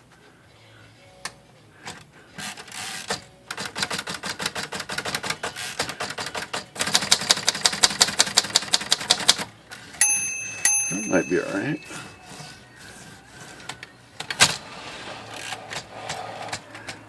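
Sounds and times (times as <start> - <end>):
typewriter carriage clicking: 2.6 - 9.5.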